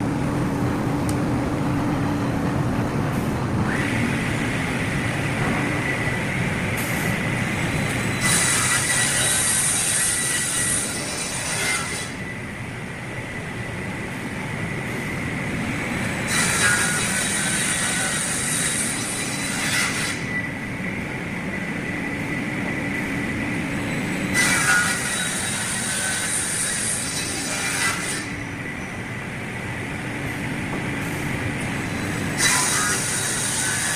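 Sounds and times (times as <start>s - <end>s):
saw machine running: 3.7s - 12.3s, 15.4s - 20.7s, 23.2s - 28.7s, 31.6s - 33.9s.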